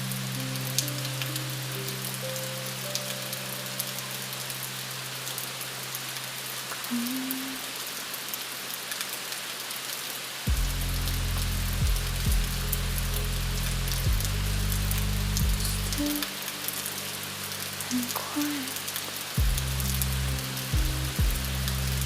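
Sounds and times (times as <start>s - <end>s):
steady rain hiss: 0.0s - 22.0s
deep bass: 10.5s - 16.3s, 19.4s - 22.0s
soft low drone: 10.5s - 22.0s.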